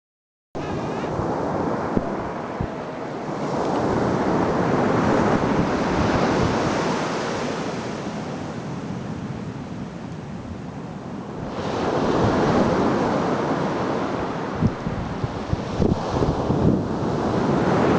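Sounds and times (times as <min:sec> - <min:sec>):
wind buffeting microphone: 0:00.6 - 0:07.8, 0:11.3 - 0:17.9
surf washing onto beach: 0:00.6 - 0:09.1, 0:11.4 - 0:17.9.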